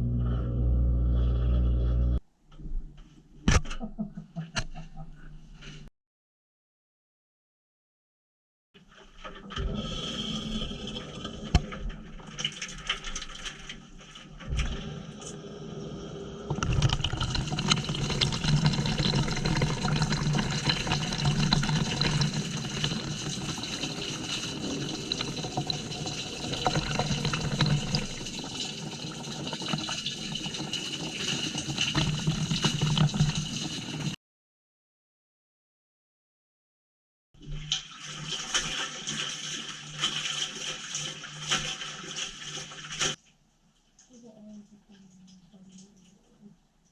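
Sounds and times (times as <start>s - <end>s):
low hum: 0.0s - 2.6s
water rushing into washing machine: 8.8s - 34.2s, 37.4s - 43.2s.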